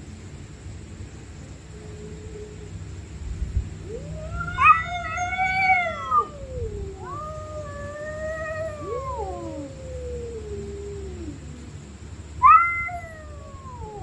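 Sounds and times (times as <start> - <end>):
cats yowling: 3.8 - 14.0.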